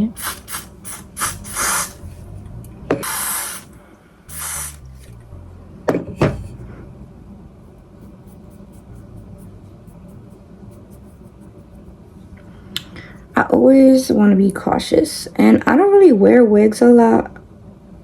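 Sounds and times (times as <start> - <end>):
hair spray hissing: 0.0 - 2.2, 2.9 - 5.0.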